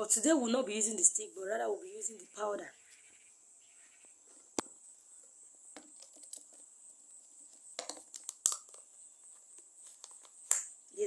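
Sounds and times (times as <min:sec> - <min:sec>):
crickets chirring: 0:00.0 - 0:11.0
clicks of small objects: 0:07.8 - 0:08.9, 0:10.0 - 0:11.0.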